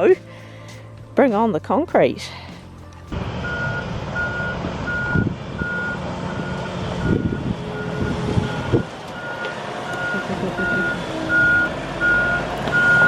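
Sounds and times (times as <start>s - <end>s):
diesel engine running: 2.2s - 13.0s
truck back-up alarm beeping: 3.1s - 13.0s.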